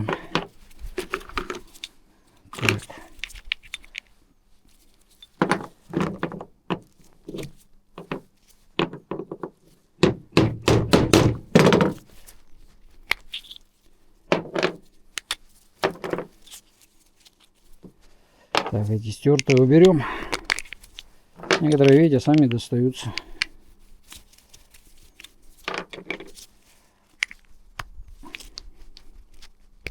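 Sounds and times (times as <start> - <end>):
knocks and thunks on metal: 10.0 - 12.0.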